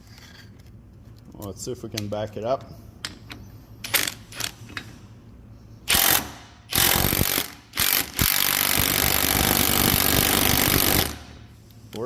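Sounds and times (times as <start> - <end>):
impact wrench hammering a bolt: 5.9 - 11.4.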